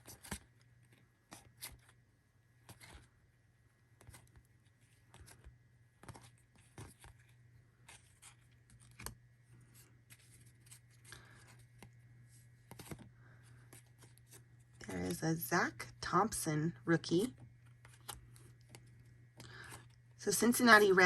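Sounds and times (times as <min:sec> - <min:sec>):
trading cards sliding and flipping: 0:02.6 - 0:03.1, 0:04.0 - 0:15.4, 0:17.2 - 0:21.0.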